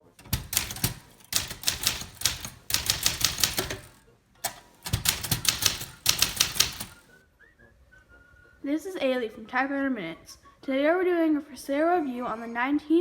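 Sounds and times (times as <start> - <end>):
manual typewriter keystrokes: 0.0 - 7.1.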